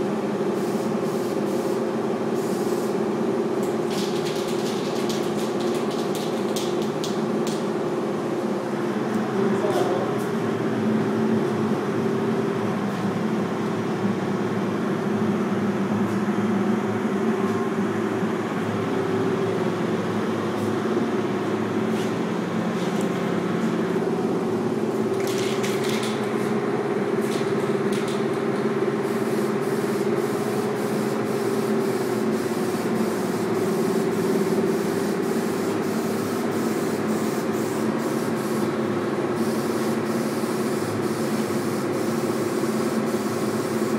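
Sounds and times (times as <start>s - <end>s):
spray paint hissing: 29.0s - 38.7s, 39.4s - 43.9s.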